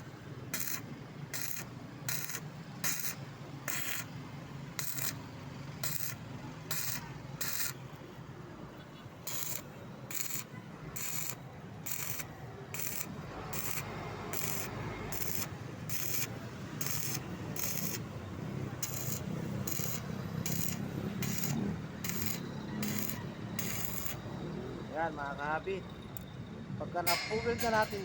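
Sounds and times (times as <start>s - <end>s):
arc welding crackling hiss: 0.5s - 4.2s, 4.8s - 5.2s, 5.8s - 7.8s, 9.2s - 18.1s, 18.8s - 24.4s, 27.1s - 28.0s.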